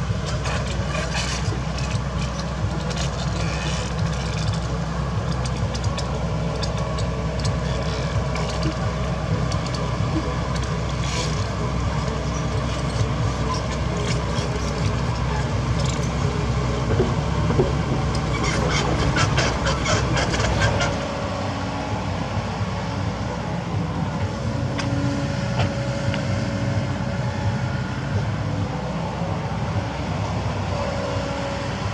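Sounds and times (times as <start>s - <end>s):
excavator diesel engine running: 0.0s - 31.9s
clicks and knocks: 16.9s - 19.4s.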